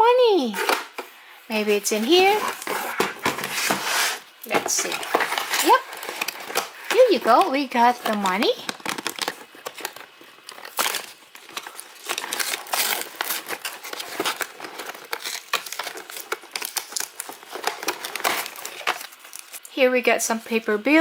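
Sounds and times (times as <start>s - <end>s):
plastic wrapping crinkling: 0.4s - 21.0s.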